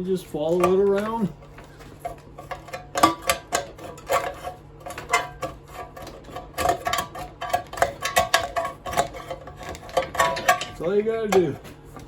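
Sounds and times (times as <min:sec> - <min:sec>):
metal scraping: 0:00.0 - 0:12.0
metal tool clinking: 0:06.6 - 0:11.4.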